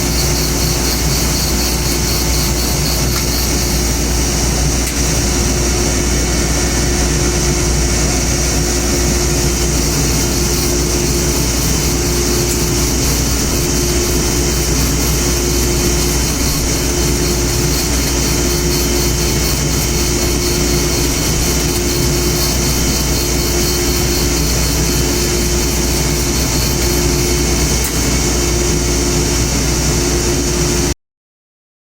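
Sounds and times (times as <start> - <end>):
woodworking machine droning: 0.0 - 31.0.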